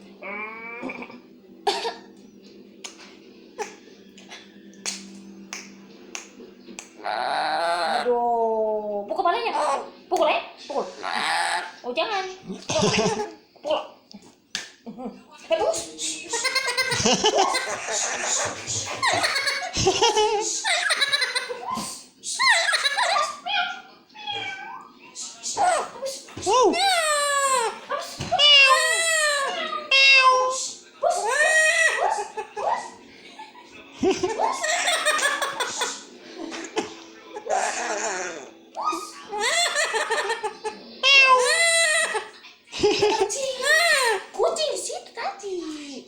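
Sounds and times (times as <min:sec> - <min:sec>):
parrot mimicking laughter: 0:16.3 - 0:21.8, 0:22.4 - 0:23.4, 0:37.4 - 0:42.4
harsh squawk: 0:26.7 - 0:32.4, 0:41.0 - 0:42.4.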